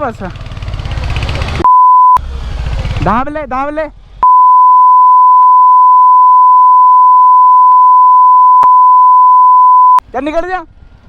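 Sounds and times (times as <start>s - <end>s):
high-pitched censor bleep: 1.6s - 2.2s, 4.2s - 10.0s.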